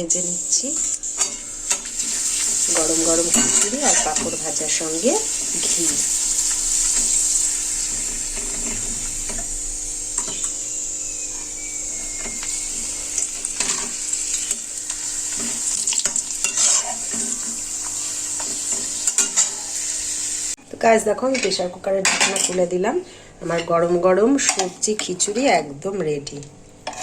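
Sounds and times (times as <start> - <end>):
food sizzling in hot oil: 0.0 - 20.6.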